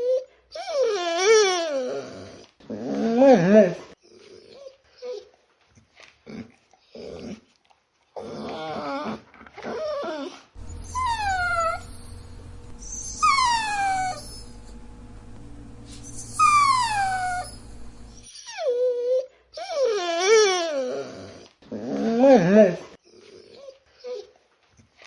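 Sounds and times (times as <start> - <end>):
dog whining and whimpering: 0.0 - 5.4, 8.2 - 24.4
steady low hum: 10.6 - 18.3.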